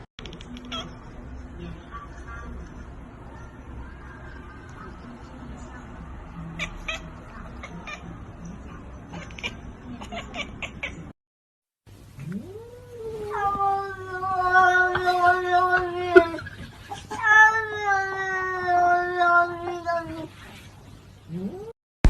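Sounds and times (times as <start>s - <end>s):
cat yowling: 6.6s - 8.1s, 9.1s - 11.0s, 12.3s - 20.3s.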